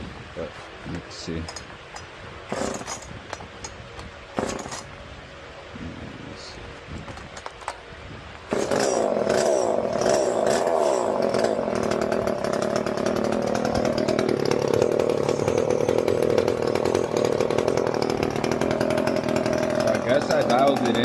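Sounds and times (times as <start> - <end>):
chainsaw engine running: 1.5 - 4.9, 8.5 - 21.0.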